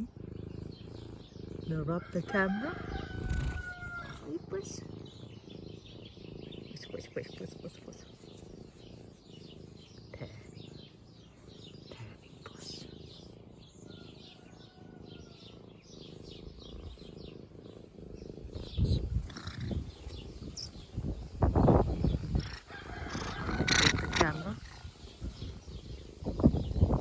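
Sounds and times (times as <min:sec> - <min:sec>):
birds chirping faintly: 0:00.0 - 0:27.0
cat purring: 0:00.0 - 0:27.0.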